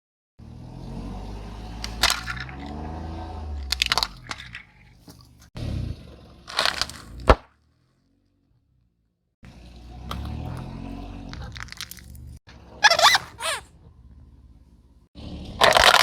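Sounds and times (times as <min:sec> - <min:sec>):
crunching under car tyre: 0:06.4 - 0:08.2, 0:09.8 - 0:13.6
short squeaky wavering sounds: 0:12.7 - 0:13.7.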